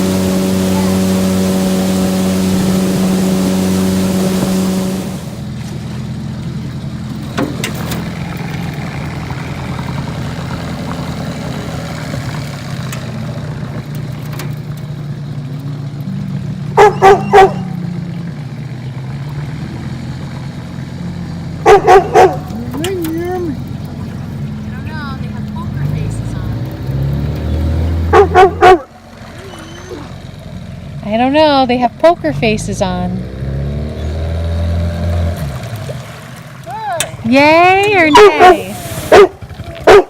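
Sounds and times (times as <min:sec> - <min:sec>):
steady hum: 0:00.0 - 0:05.6
outboard motor running: 0:00.0 - 0:40.0
dog barking: 0:16.8 - 0:17.8, 0:21.6 - 0:22.6, 0:28.1 - 0:30.1, 0:38.2 - 0:40.0.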